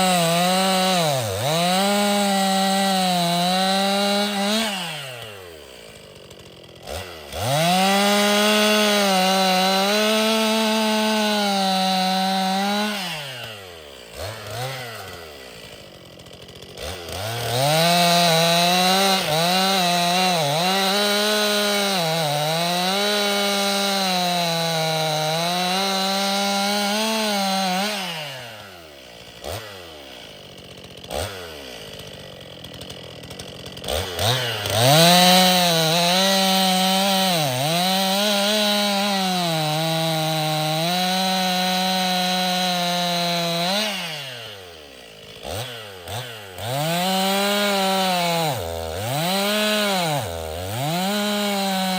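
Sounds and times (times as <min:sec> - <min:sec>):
chainsaw cutting logs: 0:00.0 - 0:51.9.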